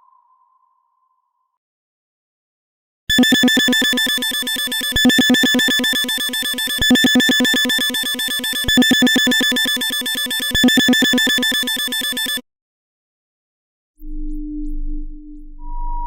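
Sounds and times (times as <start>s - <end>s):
pulsing electronic sonar tone: 0.0s - 1.2s, 14.0s - 16.0s.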